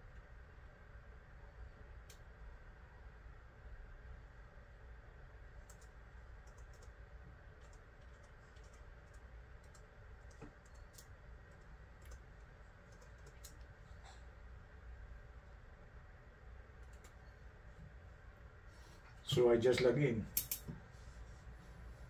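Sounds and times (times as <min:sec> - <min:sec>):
low room hum: 0:00.0 - 0:22.0
laptop keyboard typing: 0:05.6 - 0:13.7, 0:16.8 - 0:17.2.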